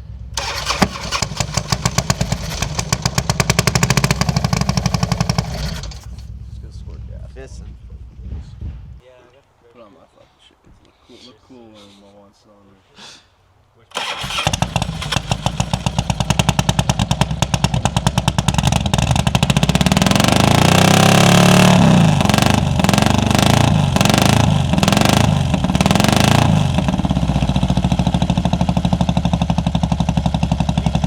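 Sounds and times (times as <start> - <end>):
motorcycle engine revving: 0.4 - 6.4, 13.9 - 31.0.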